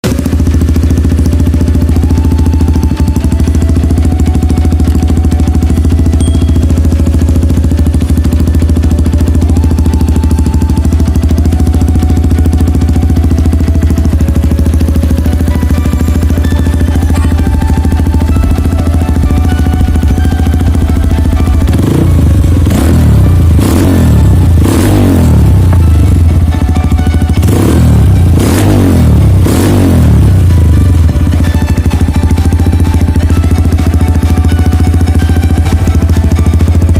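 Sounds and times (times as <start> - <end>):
motorcycle engine idling: 0.0 - 36.9.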